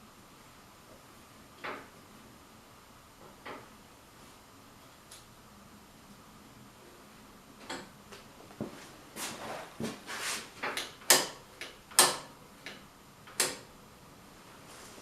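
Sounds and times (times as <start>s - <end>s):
sharp clicks and knocks: 1.6s - 1.9s, 3.2s - 3.7s, 7.6s - 8.3s, 10.6s - 13.7s.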